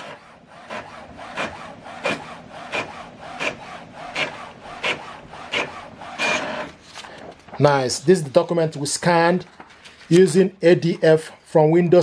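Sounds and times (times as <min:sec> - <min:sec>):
inkjet printer printing: 0:00.0 - 0:07.8.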